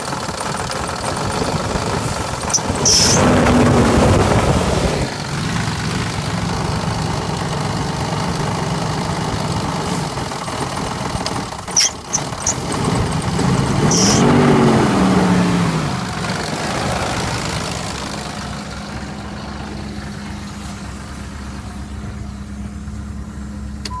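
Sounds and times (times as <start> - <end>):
engine idling with tapping knock: 0.0 - 3.3, 5.2 - 14.3
engine revving: 1.4 - 8.2, 11.2 - 21.1.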